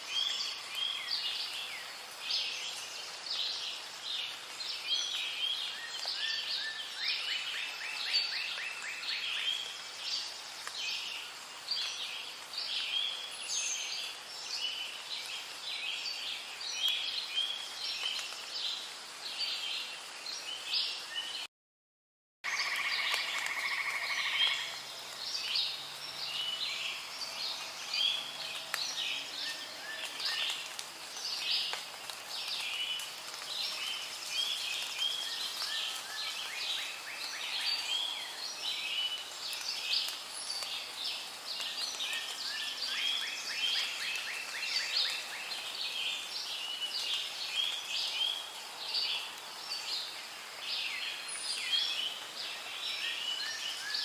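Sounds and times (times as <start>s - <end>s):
frogs calling: 22.5s - 24.8s.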